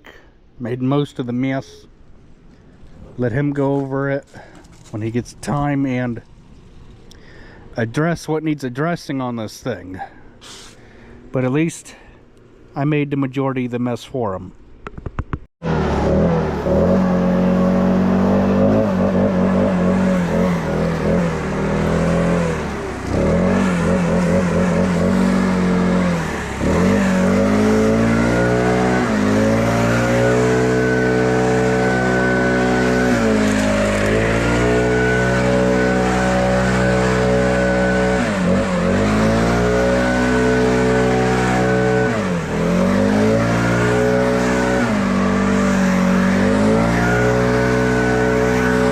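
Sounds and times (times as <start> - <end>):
engine running at high speed: 15.6 - 48.9.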